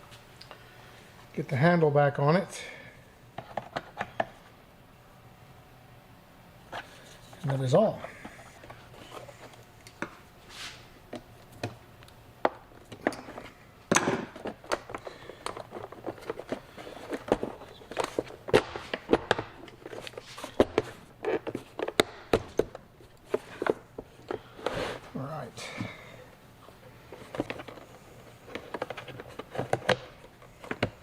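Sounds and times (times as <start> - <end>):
plastic parts clicking and rattling: 12.8 - 24.4, 27.1 - 31.0.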